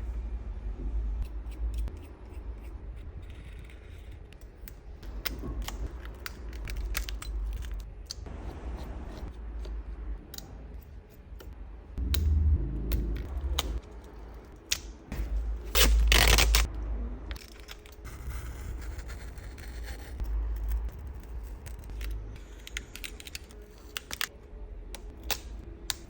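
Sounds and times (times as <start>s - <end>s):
steady low hum: 0.0s - 26.0s
loud low rumble: 11.9s - 17.4s.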